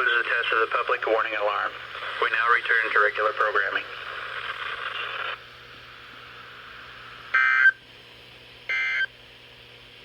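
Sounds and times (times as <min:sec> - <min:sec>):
radio hiss: 0:00.0 - 0:05.4.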